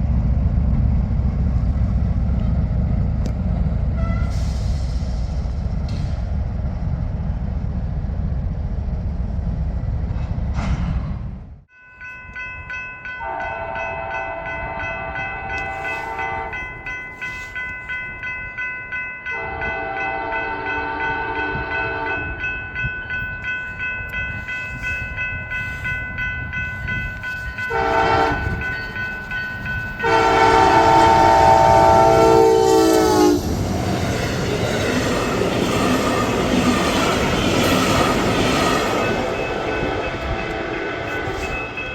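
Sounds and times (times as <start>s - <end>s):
low train rumble: 0.0s - 41.9s
locomotive horn blasts: 4.0s - 4.5s, 13.2s - 16.8s, 19.3s - 22.4s, 27.6s - 28.8s, 30.0s - 33.6s, 39.8s - 41.9s
rail joint clatter: 10.1s - 11.4s.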